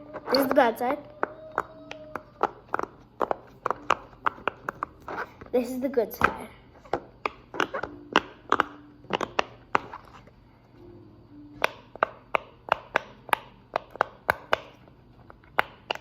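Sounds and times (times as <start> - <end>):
fidget toy bubbles popping: 7.2 - 9.5.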